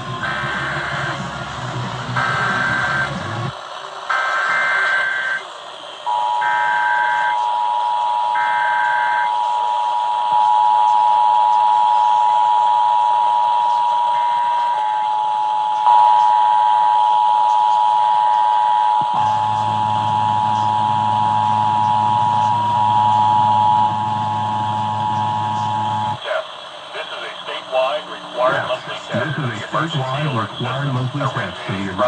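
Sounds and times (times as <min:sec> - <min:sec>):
harsh two-tone attention signal: 0:00.0 - 0:03.5, 0:19.0 - 0:26.2
raspy data tone bursts: 0:19.0 - 0:26.2.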